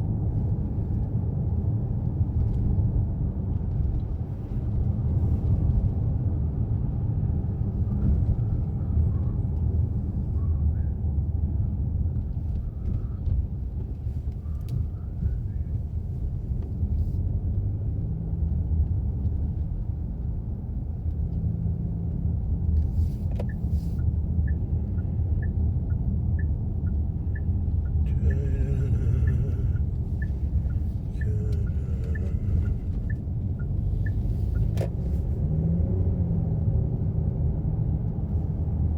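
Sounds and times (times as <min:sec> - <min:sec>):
car tyres and engine rumble: 0:00.0 - 0:38.9
turn signal ticking: 0:12.2 - 0:36.2.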